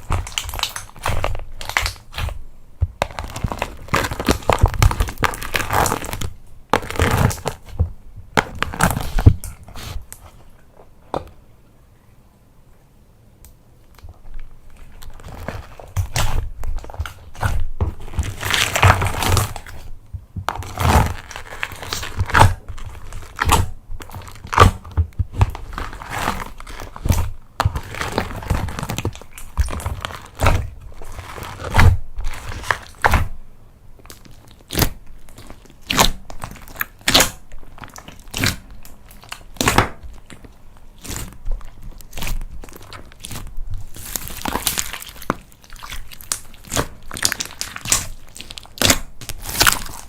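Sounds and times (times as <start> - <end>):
slime squishing and popping: 0.0 - 10.2, 14.0 - 33.4, 34.0 - 50.0.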